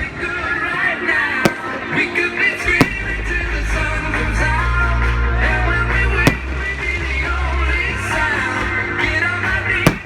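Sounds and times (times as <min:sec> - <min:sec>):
rock song with singing: 0:00.0 - 0:10.0
heavy bass: 0:02.6 - 0:10.0.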